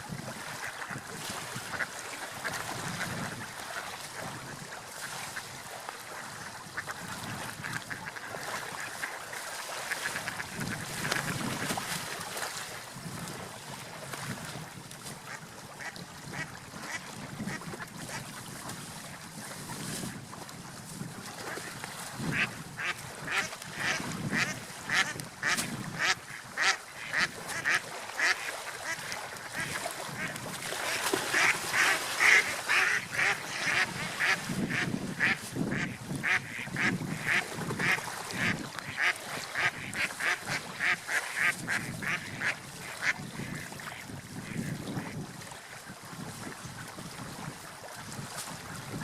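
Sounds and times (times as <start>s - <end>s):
ducks quacking: 6.2s - 9.2s, 22.3s - 43.9s.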